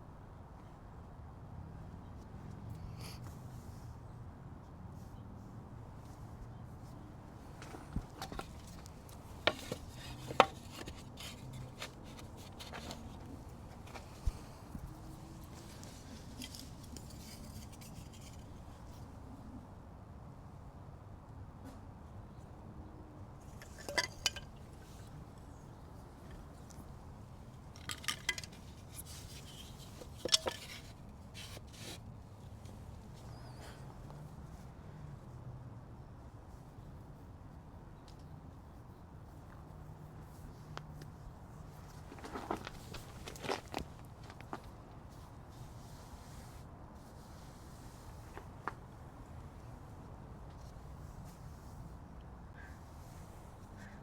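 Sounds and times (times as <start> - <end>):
scratchy rustling: 7.6 - 18.4, 41.8 - 44.8.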